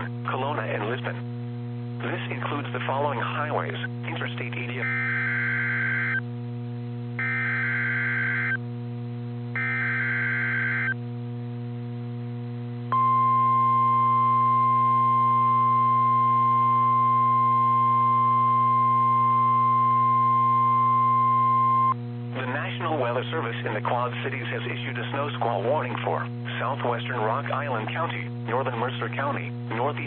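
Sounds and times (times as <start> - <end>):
steady low hum: 0.0 - 30.0
steady warning alarm tone: 4.8 - 6.2, 7.2 - 8.6, 9.6 - 11.0.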